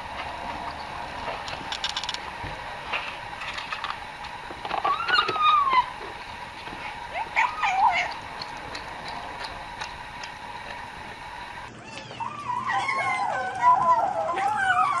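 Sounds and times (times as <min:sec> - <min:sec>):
cat eating clicks: 0:07.9 - 0:10.9.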